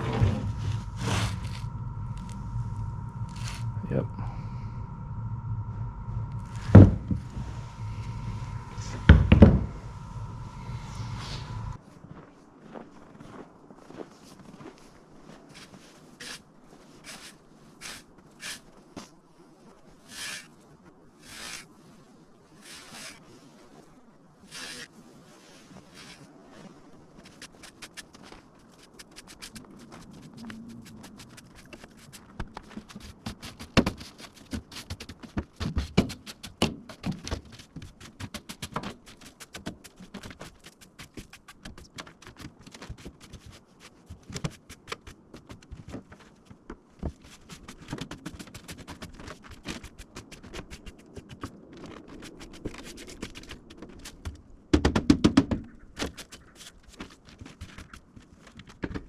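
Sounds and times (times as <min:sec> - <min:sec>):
rustling: 0:00.0 - 0:11.8.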